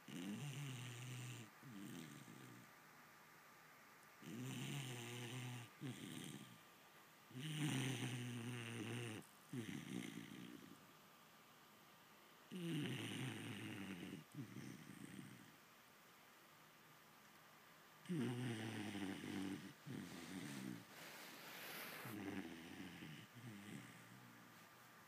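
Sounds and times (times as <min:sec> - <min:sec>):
puppy snoring: 0:00.0 - 0:02.7, 0:04.2 - 0:06.6, 0:07.3 - 0:10.8, 0:12.5 - 0:15.6, 0:18.0 - 0:24.6.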